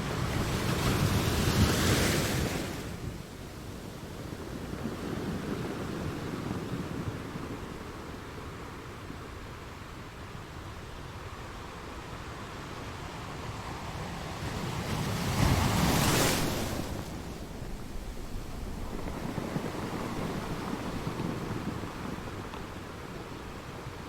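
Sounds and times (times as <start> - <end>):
waves washing against stones: 14.5 - 24.0
wave crashing: 14.7 - 23.5.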